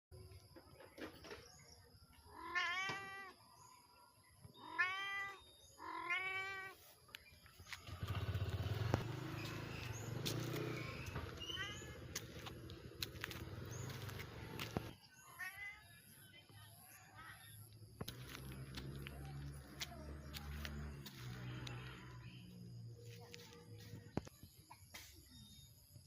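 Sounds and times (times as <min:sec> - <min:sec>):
cat meowing: 0:02.3 - 0:03.4, 0:04.5 - 0:06.8, 0:10.9 - 0:12.4.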